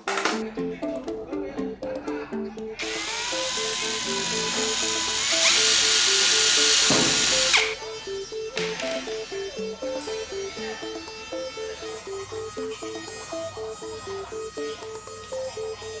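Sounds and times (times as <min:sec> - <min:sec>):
plucked-string background music: 0:00.0 - 0:16.0
power tool motor whine: 0:02.8 - 0:08.2.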